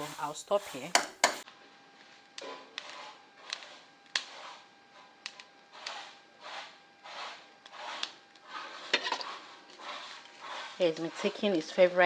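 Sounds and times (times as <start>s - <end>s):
spoon scraping in cooking pot: 0.0s - 1.4s, 5.8s - 12.0s.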